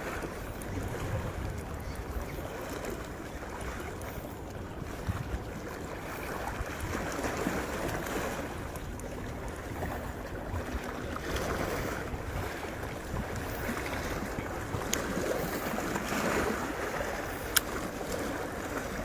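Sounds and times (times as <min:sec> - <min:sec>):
sea waves washing ashore: 0:00.0 - 0:19.0
wind buffeting microphone: 0:00.0 - 0:19.0
faint clicks: 0:17.4 - 0:17.8.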